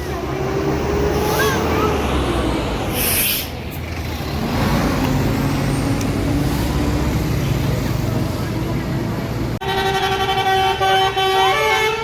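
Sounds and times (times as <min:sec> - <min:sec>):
bus diesel engine running: 0:00.0 - 0:10.8
air brake hiss: 0:02.9 - 0:03.6.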